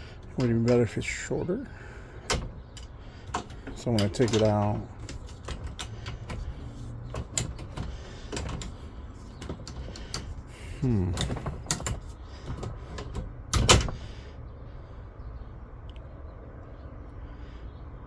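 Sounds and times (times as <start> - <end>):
plastic tool box clicks and knocks: 2.2 - 10.5, 11.1 - 14.0.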